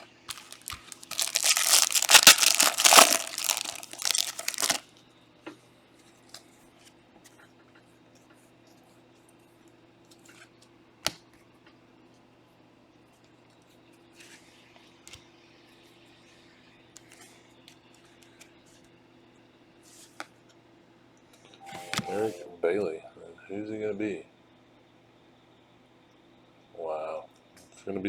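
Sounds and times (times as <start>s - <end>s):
foil wrapper tearing and crinkling: 0.3s - 4.8s.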